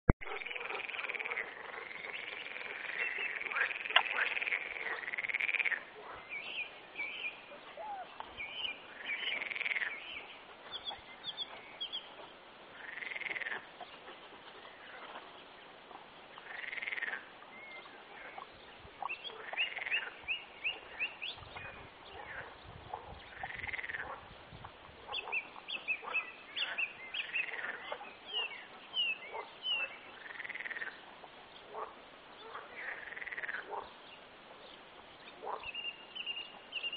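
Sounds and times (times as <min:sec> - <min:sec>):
frogs calling: 0:00.3 - 0:06.4, 0:07.1 - 0:10.3, 0:12.8 - 0:13.8, 0:16.4 - 0:22.6, 0:23.3 - 0:24.2, 0:25.1 - 0:31.0, 0:31.7 - 0:33.8.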